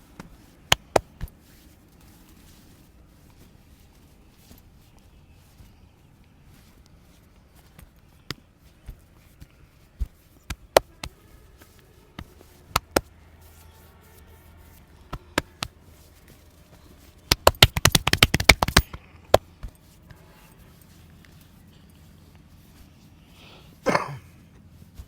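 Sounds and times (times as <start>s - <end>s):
hands slapping during massage: 0.0s - 5.8s, 6.5s - 13.6s, 14.2s - 16.4s, 17.0s - 20.0s.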